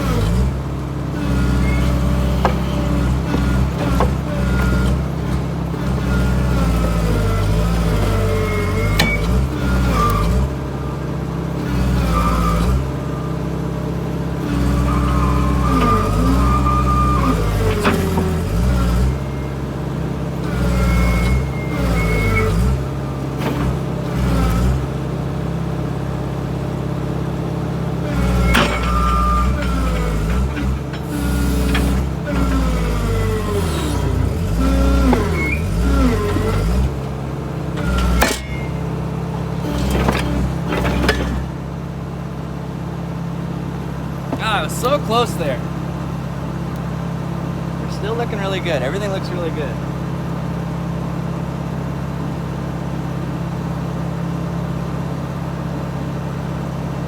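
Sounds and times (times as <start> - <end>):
excavator diesel engine: 0.0 - 57.0.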